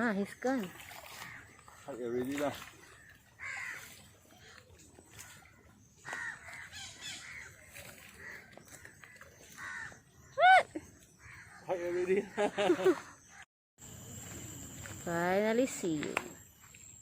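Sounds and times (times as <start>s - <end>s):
crow cawing: 2.9s - 4.6s, 6.0s - 10.0s, 11.2s - 13.4s.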